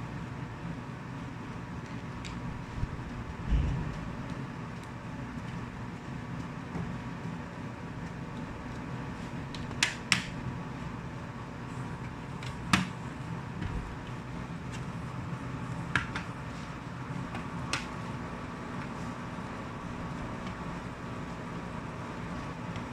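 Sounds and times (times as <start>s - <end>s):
steady low hum: 0.0s - 22.9s
sharp clicks of laptop parts: 9.5s - 10.4s, 12.0s - 13.0s, 15.9s - 16.4s, 17.3s - 18.0s.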